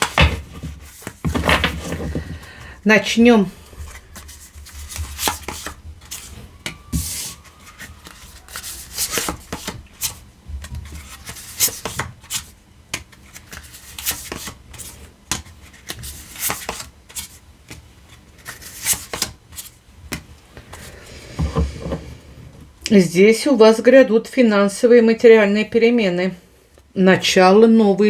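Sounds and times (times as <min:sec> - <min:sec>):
cards being shuffled: 0:00.0 - 0:02.7, 0:03.9 - 0:20.9.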